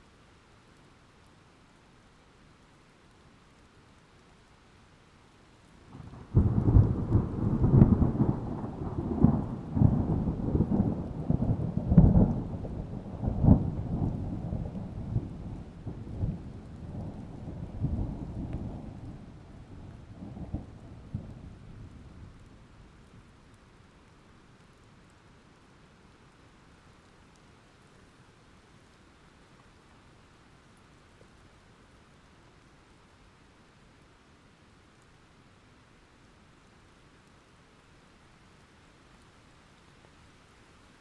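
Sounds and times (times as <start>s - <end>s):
faint rain: 0.0s - 41.0s
thunder rumbling: 5.9s - 22.7s.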